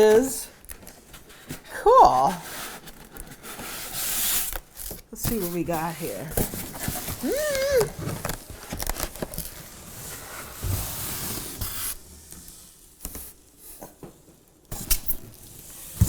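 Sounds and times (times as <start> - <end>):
packaging rustling and scraping: 0.0 - 16.0.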